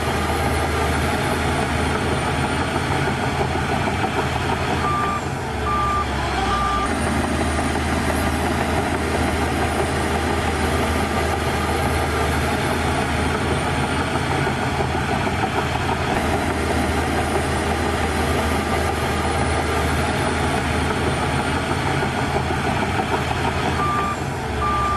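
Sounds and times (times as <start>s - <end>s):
bulldozer diesel engine running: 0.0s - 24.9s
reversing alarm beeps: 4.8s - 6.9s, 23.8s - 24.9s.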